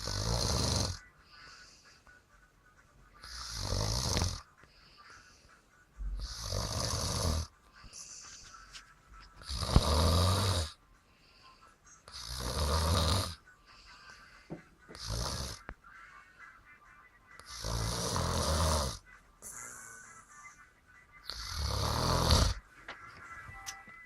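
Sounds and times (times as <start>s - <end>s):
person snoring loudly: 0.0s - 1.0s, 3.2s - 4.5s, 6.2s - 7.5s, 9.4s - 10.8s, 12.1s - 13.4s, 14.9s - 15.7s, 17.4s - 20.2s, 21.2s - 22.6s
faint breathing: 0.9s - 3.8s, 4.4s - 9.6s, 10.7s - 12.4s, 13.3s - 17.8s, 18.9s - 21.6s.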